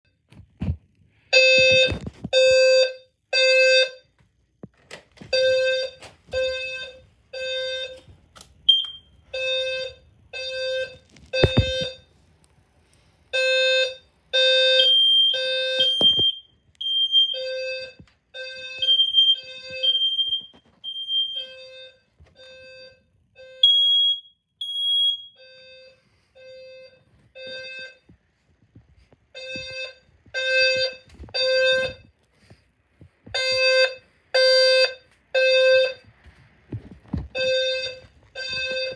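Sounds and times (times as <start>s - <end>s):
fire alarm short beeps: 8.7s - 12.0s, 13.4s - 28.0s.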